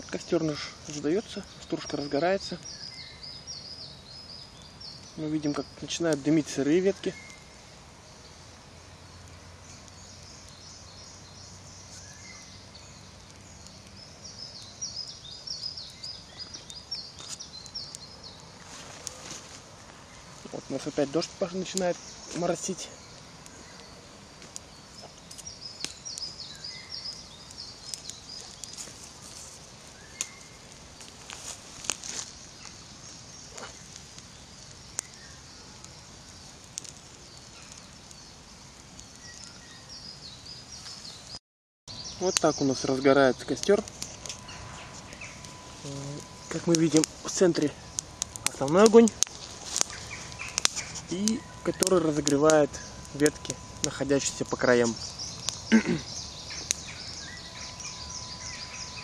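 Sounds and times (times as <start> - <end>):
background hiss: 0.0 - 59.0
birds chirping faintly: 0.0 - 59.0
campfire crackling and popping: 0.0 - 59.0
songbird singing high notes: 49.8 - 59.0.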